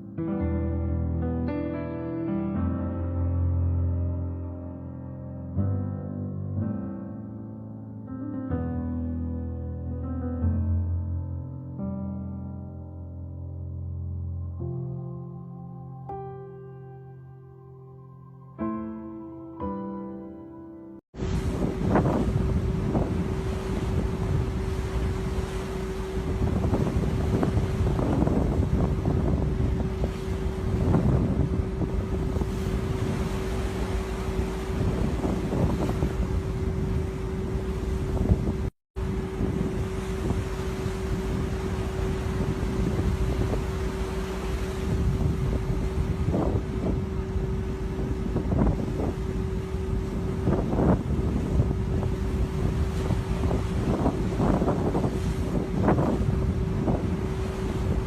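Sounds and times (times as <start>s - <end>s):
steady single-pitch hum: 21.2s - 58.0s
wind buffeting microphone: 21.2s - 58.0s.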